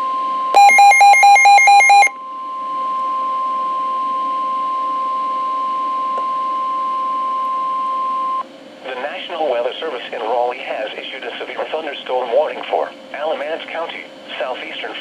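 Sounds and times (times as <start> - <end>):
rapid electronic beeping: 0.6 - 2.1
steady warning alarm tone: 0.6 - 2.1.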